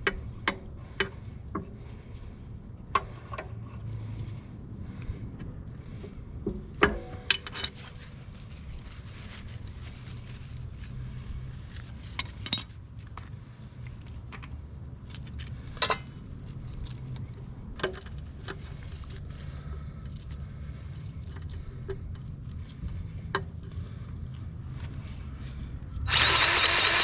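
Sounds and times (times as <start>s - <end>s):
metal tools clinking: 7.1s - 8.0s, 12.4s - 12.8s.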